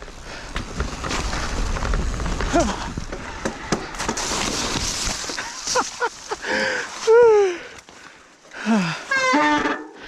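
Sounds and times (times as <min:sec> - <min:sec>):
bike knocks and rattles: 0:00.0 - 0:05.4
wind and ride rumble: 0:00.0 - 0:05.8.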